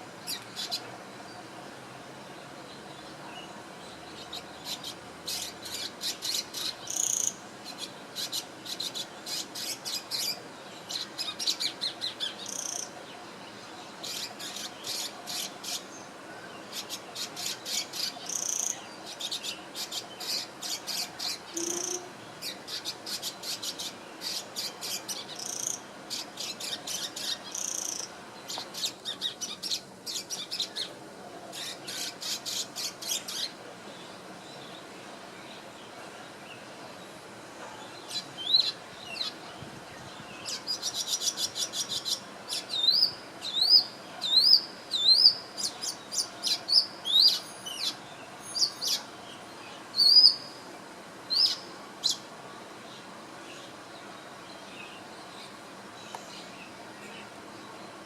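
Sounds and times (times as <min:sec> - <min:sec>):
small bird chirping: 0:03.0 - 0:13.0, 0:16.7 - 0:30.9, 0:40.4 - 0:49.1, 0:50.0 - 0:50.6, 0:51.3 - 0:52.2.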